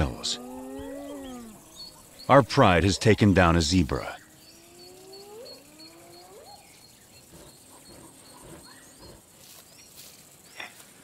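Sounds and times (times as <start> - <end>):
hyenas whooping: 0.0 - 2.1, 4.6 - 6.7.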